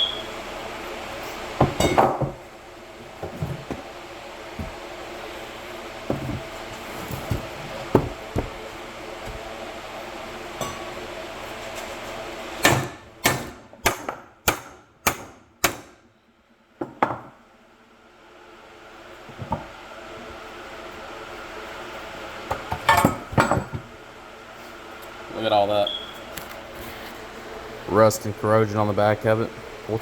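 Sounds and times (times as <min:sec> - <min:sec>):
hammer striking metal: 0:12.6 - 0:16.0.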